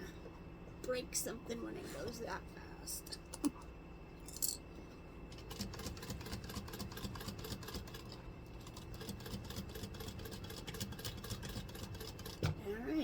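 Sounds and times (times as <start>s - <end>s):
sewing machine stitching leather: 5.4s - 12.6s.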